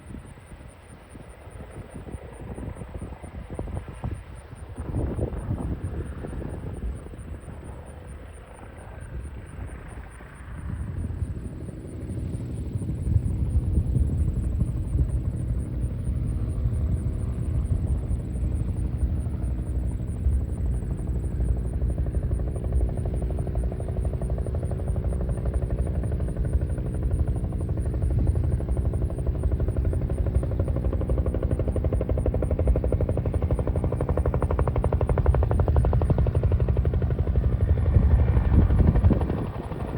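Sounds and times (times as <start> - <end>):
helicopter rotor and engine: 0.0 - 39.9.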